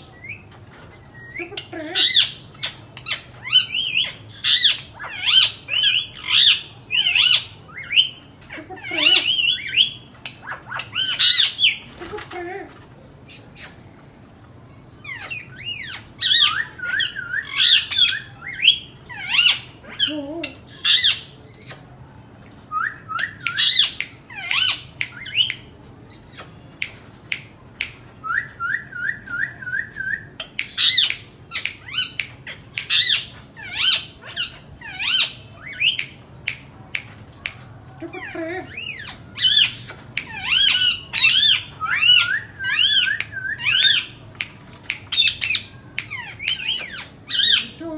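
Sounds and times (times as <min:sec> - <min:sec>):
parrot chirping: 0:01.2 - 0:11.9, 0:14.9 - 0:21.9, 0:22.7 - 0:27.0, 0:27.8 - 0:36.2, 0:37.4 - 0:47.8
parrot screeching: 0:32.9 - 0:35.9, 0:38.7 - 0:44.2.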